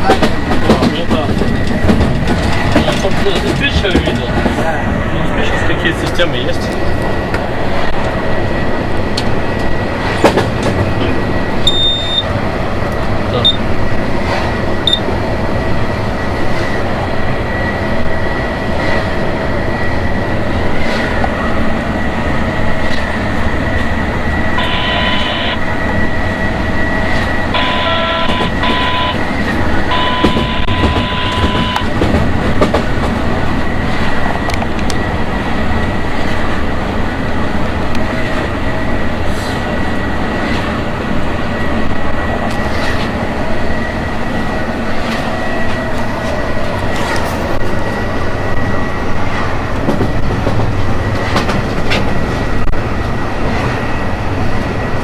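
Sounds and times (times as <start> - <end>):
electric locomotive running: 0.0 - 55.0
electronic beep tones: 11.6 - 12.3, 14.9 - 15.1, 24.6 - 25.6, 27.6 - 29.2, 29.9 - 31.9
steady high tone: 24.2 - 31.9.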